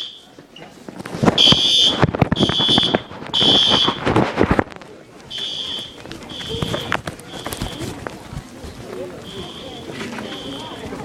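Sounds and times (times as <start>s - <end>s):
fire alarm horn blasts: 1.4s - 4.0s, 5.3s - 7.9s, 9.2s - 10.8s.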